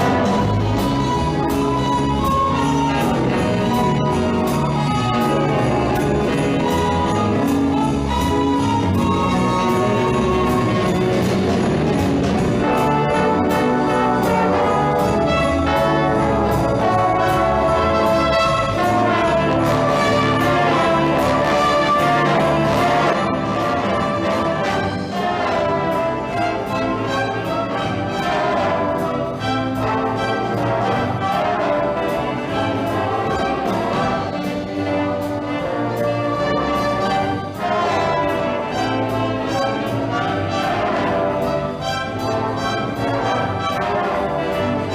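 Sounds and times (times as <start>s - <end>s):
brass swing music: 0.0s - 44.9s.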